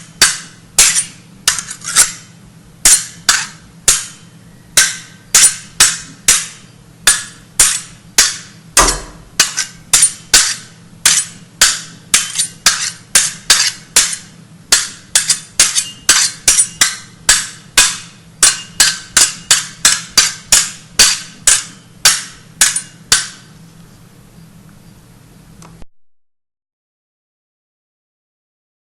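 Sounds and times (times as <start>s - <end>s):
hammer striking with ring: 0.0s - 1.6s, 2.8s - 23.5s.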